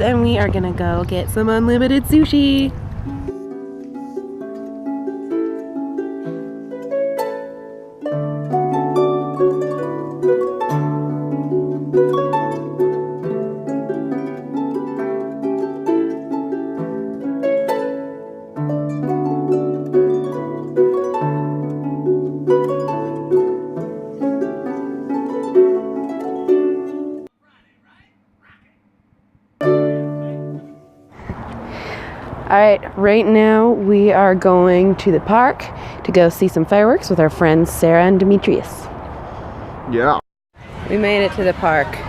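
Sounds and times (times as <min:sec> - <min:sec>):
plucked string melody: 0:00.0 - 0:27.3, 0:29.6 - 0:31.2.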